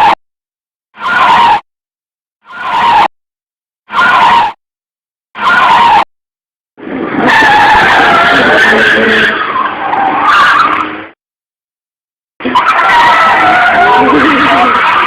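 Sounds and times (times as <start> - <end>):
car tyres screeching: 2.6 - 3.1, 5.4 - 6.1, 6.8 - 11.2, 12.4 - 15.0.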